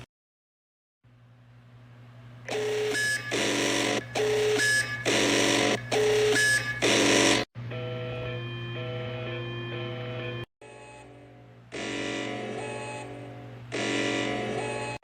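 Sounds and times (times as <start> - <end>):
harsh buzzy data burst: 2.5 - 7.5, 11.8 - 15.0.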